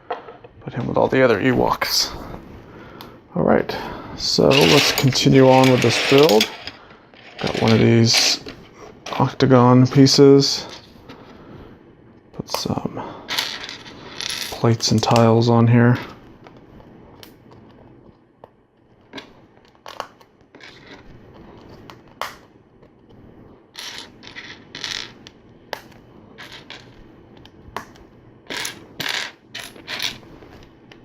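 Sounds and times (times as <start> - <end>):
plastic bricks clicking and clattering: 4.5 - 8.4.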